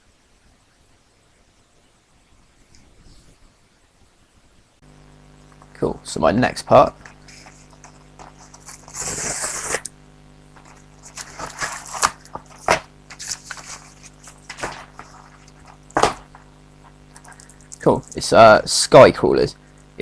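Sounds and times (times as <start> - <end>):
packaging ripping: 7.3 - 9.9, 10.6 - 16.2
packaging crinkling: 10.6 - 16.5, 17.1 - 18.4.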